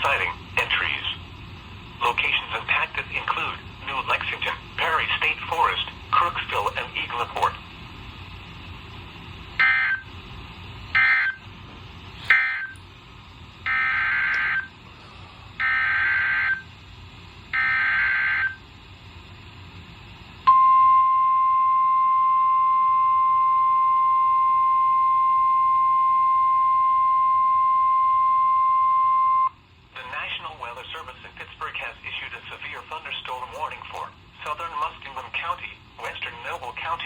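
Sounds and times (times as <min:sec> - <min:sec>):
steady warning alarm tone: 0:09.6 - 0:10.2, 0:10.9 - 0:11.5, 0:12.2 - 0:12.8, 0:13.6 - 0:14.8, 0:15.6 - 0:16.9, 0:17.5 - 0:18.8, 0:20.4 - 0:30.1.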